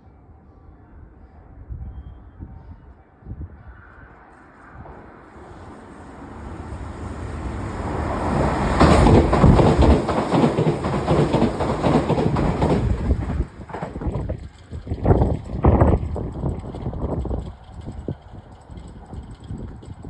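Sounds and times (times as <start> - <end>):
electric train passing: 2.8 - 20.0
wheels clattering over rails: 5.4 - 20.0.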